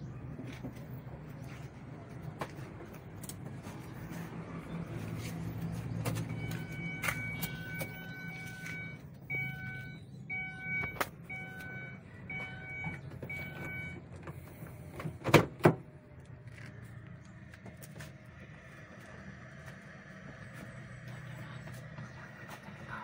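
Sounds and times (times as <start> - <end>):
car engine idling: 0.0 - 23.0
electronic warning chime beeping: 6.4 - 14.0.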